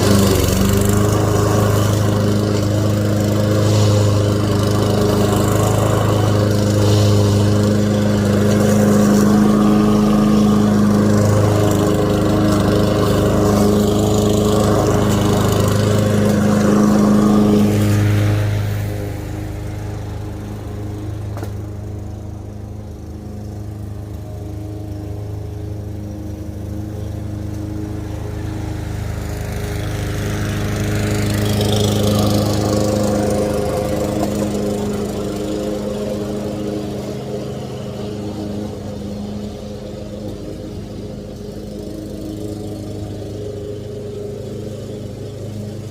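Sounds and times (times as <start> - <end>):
lawn mower engine running: 0.0 - 45.9.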